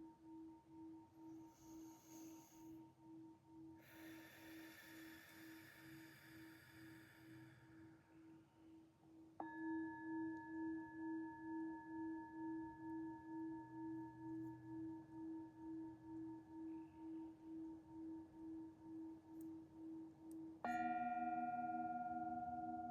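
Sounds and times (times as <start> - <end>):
singing bowl ringing: 20.6 - 22.9.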